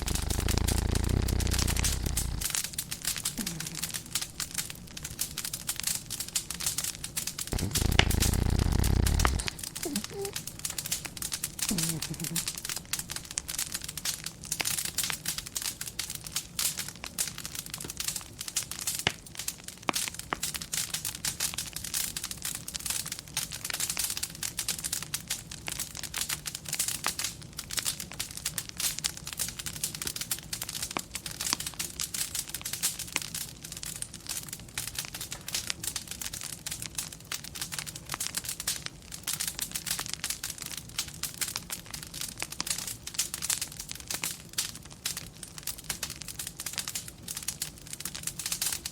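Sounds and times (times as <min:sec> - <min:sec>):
low steady hum: 0:00.0 - 0:02.6
wood fire crackling: 0:00.0 - 0:48.9.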